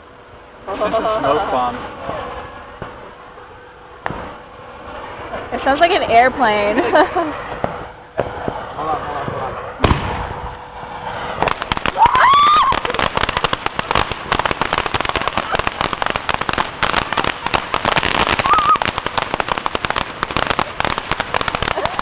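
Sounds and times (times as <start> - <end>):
small firework crackling: 0.0 - 22.0
person crying out: 12.0 - 12.8, 18.4 - 18.8.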